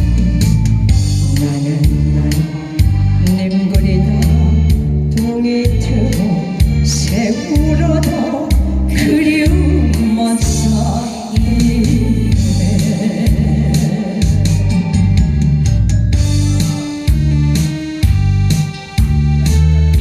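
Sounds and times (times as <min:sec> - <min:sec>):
person singing: 0:00.0 - 0:15.6
repeating bass beat: 0:11.4 - 0:20.0.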